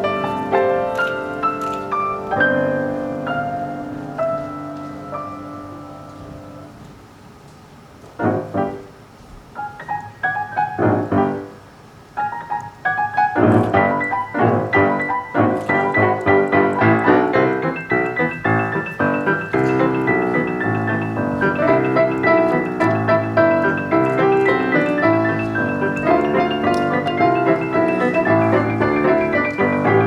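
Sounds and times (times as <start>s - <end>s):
piano music: 0.0s - 7.1s, 8.2s - 30.0s.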